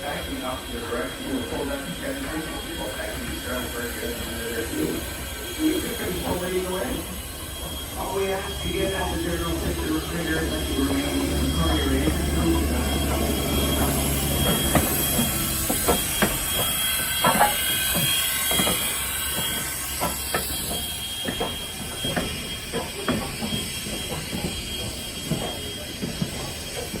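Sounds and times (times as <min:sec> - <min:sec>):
train rolling on track: 0:00.0 - 0:27.0
thin high whine: 0:05.6 - 0:25.9
wheels and couplings clanking: 0:08.8 - 0:27.0.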